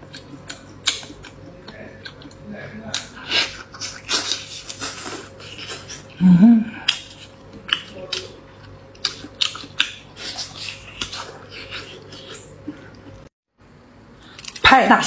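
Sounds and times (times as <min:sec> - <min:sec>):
crunchy chewing: 0:00.0 - 0:13.3
person humming mm: 0:06.1 - 0:07.0.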